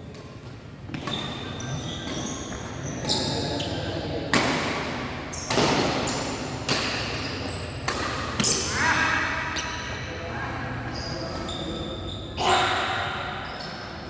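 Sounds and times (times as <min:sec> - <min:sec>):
shoes squeaking on court floor: 0:00.1 - 0:04.2, 0:05.3 - 0:08.6, 0:09.5 - 0:12.7, 0:13.4 - 0:14.0
rackets hitting shuttlecock: 0:04.3 - 0:08.7.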